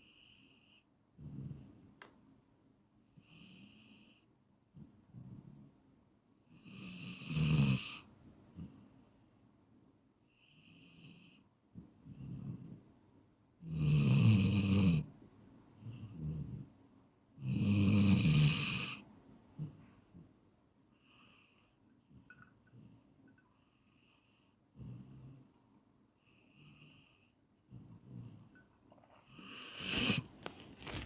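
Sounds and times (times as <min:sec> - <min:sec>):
person snoring: 0:17.4 - 0:19.0, 0:29.3 - 0:30.3
soft breaths: 0:19.0 - 0:31.0.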